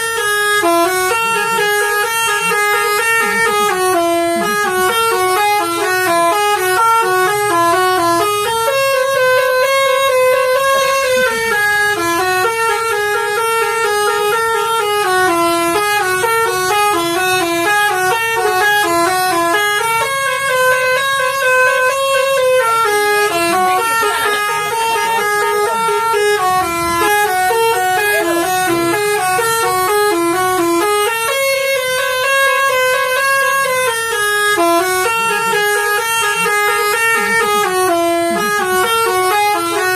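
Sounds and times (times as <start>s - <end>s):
musical air horn melody: 0.0s - 39.9s.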